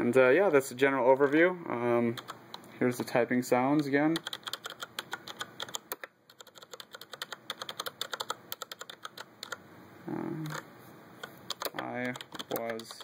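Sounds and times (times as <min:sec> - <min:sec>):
mechanical keyboard typing: 0:02.1 - 0:02.4, 0:03.8 - 0:09.6, 0:11.2 - 0:13.0.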